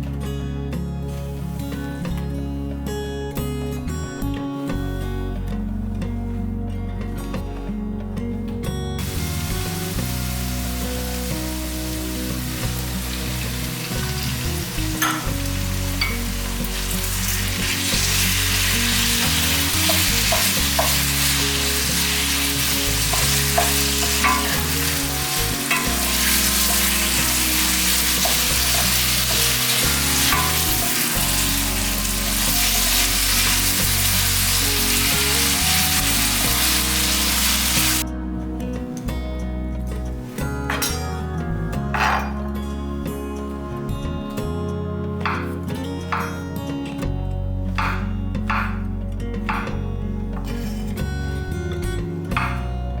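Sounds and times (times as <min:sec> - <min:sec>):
food sizzling in frying pan: 0:09.0 - 0:38.0.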